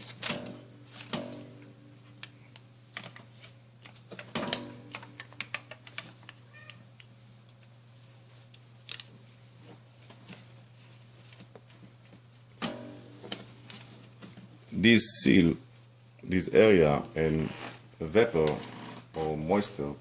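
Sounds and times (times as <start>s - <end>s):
steady low hum: 0.0s - 20.0s
foil tape crinkling: 2.0s - 12.1s.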